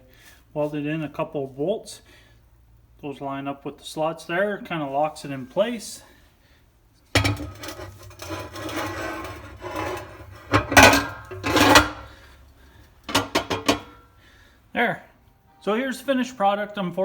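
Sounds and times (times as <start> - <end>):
metal pan scraping: 7.2 - 12.2, 13.1 - 14.0.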